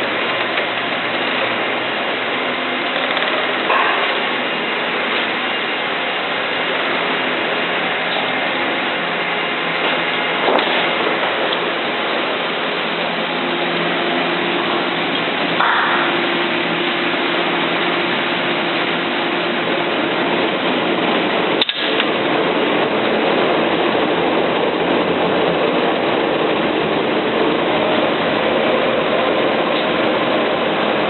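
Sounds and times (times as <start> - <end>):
steady machine noise: 0.0 - 31.0.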